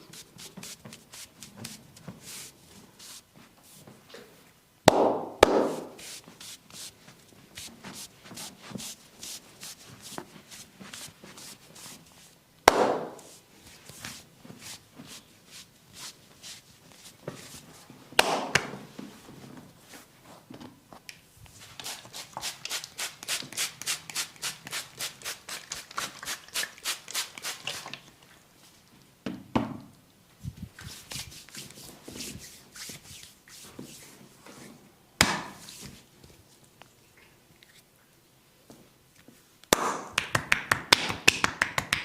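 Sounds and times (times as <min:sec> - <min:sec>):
hands tapping on skin: 0:39.7 - 0:42.0.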